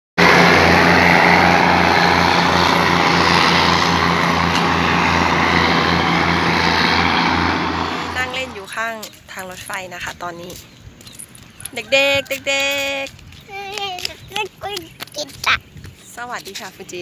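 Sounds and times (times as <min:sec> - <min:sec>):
diesel train passing: 0:00.2 - 0:10.1.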